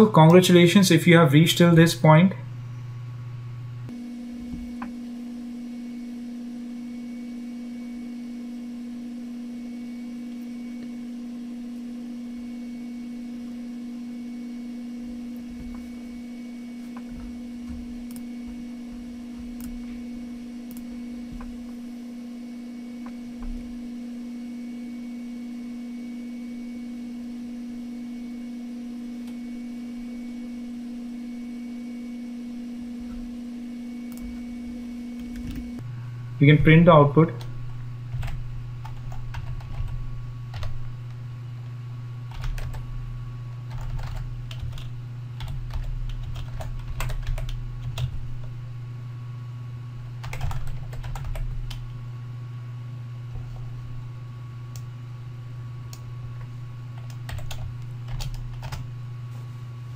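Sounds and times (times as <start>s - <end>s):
low electrical hum: 0.0s - 59.9s.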